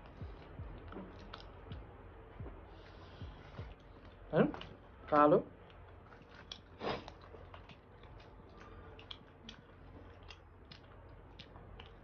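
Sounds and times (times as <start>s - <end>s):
wet mouth chewing clicks: 5.6s - 12.0s.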